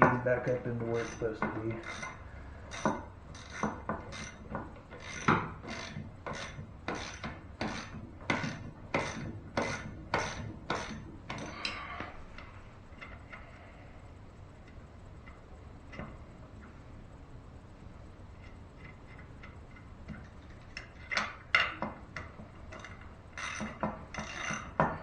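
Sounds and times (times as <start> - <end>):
ratchet wrench clicking: 1.0 - 11.8, 22.7 - 24.8.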